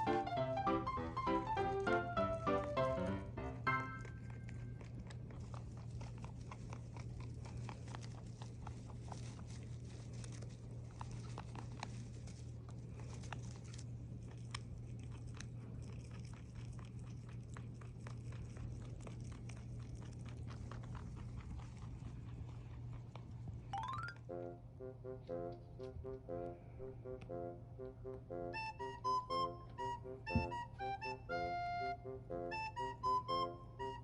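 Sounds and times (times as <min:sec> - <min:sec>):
steady low hum: 0:00.0 - 0:34.0
pet chewing crunchy food: 0:01.5 - 0:23.7.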